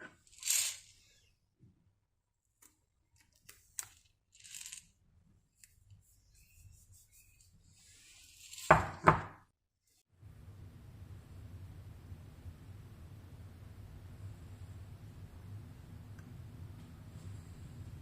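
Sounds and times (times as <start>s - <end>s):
steady low hum: 10.2s - 18.0s.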